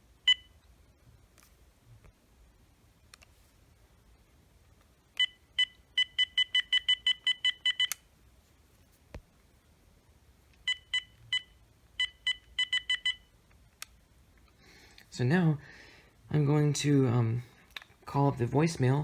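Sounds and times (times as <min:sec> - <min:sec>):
click: 0:03.1 - 0:03.3
phone key press beeps: 0:05.2 - 0:08.0, 0:10.7 - 0:13.2.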